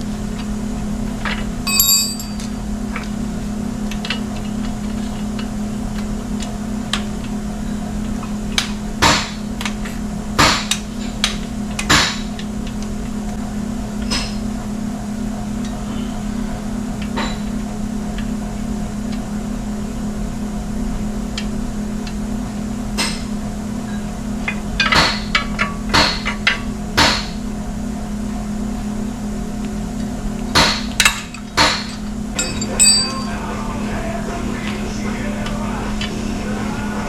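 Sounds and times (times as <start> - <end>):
steady low hum: 0.0 - 37.0
hand tools striking metal: 1.7 - 2.6, 24.5 - 27.3, 30.6 - 33.6.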